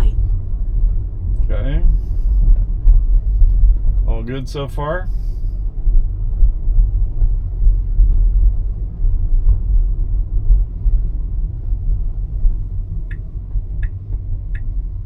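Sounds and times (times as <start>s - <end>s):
road and tyre rumble: 0.0s - 15.0s
turn signal ticking: 12.4s - 15.0s.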